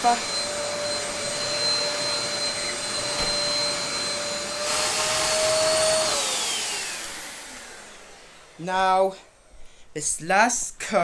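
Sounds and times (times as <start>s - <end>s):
vacuum motor spinning down: 0.0s - 8.6s
vacuum cleaner running: 0.0s - 9.6s.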